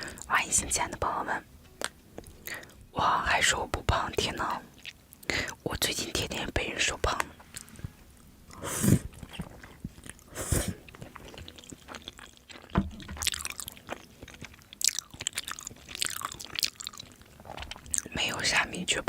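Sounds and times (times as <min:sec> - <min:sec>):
person chewing and biting food: 0:04.4 - 0:05.4, 0:07.2 - 0:07.9, 0:08.5 - 0:18.1.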